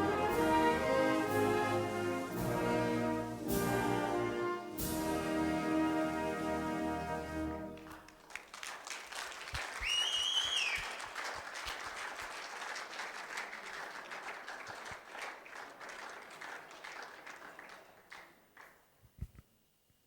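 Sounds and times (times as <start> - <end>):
audience applauding: 7.7 - 18.8
short whistle: 9.8 - 11.0.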